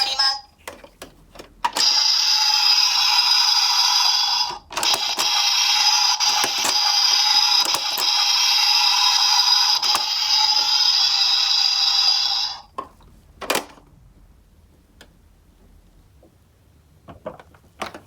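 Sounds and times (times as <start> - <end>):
toy ambulance siren: 1.8 - 12.6
plastic clicks and knocks: 17.1 - 18.0.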